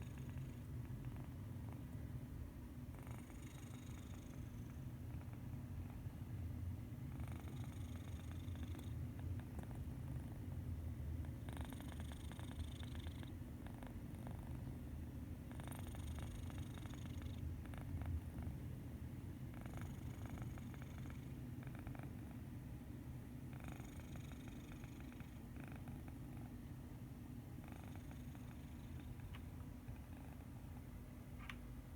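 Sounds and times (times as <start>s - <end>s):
cat snoring: 0.0s - 1.3s, 2.9s - 5.4s, 7.1s - 9.0s, 11.4s - 14.6s, 15.5s - 18.6s, 19.5s - 22.4s, 23.5s - 26.5s, 27.6s - 29.1s.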